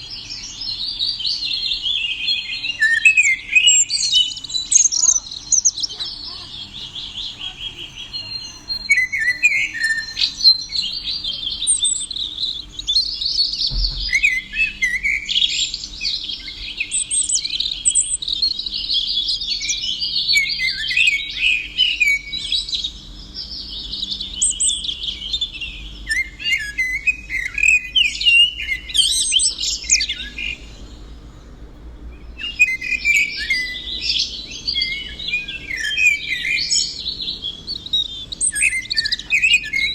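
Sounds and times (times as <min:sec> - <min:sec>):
songbirds chirping: 0:00.0 - 0:39.9
low thump: 0:13.6 - 0:14.3.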